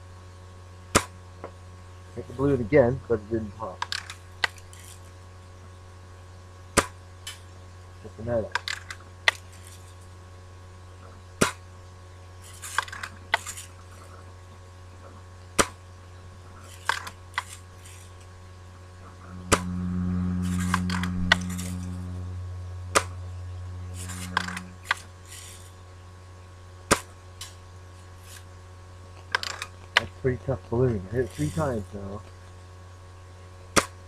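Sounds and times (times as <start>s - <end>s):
low hum: 0.0s - 34.0s.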